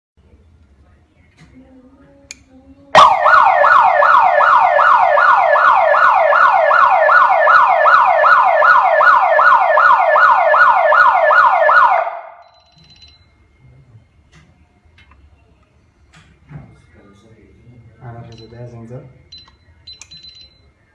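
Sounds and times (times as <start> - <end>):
fire alarm sweeping tone: 3.0 - 13.5, 19.3 - 20.7.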